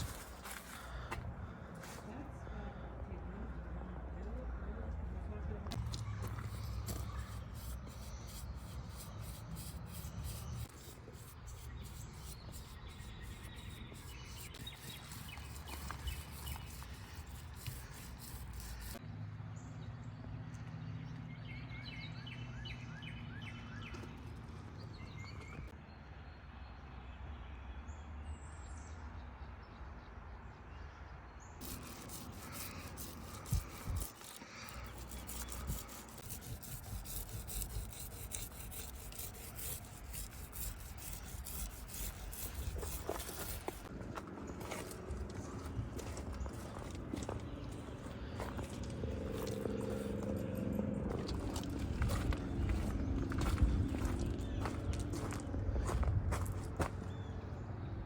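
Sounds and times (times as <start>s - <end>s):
birds chirping: 5.4s - 19.0s, 30.8s - 58.0s.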